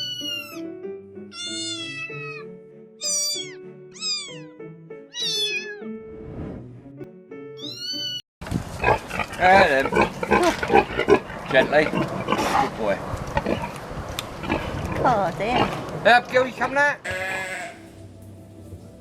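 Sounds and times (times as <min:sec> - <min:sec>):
cat meowing: 0:00.0 - 0:00.7, 0:01.3 - 0:04.5, 0:05.1 - 0:05.9, 0:07.6 - 0:08.2
soft background music: 0:00.0 - 0:08.2, 0:17.0 - 0:19.0.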